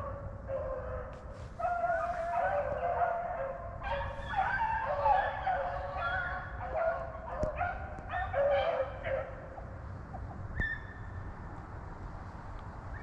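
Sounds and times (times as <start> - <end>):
hounds baying: 0.0 - 9.7.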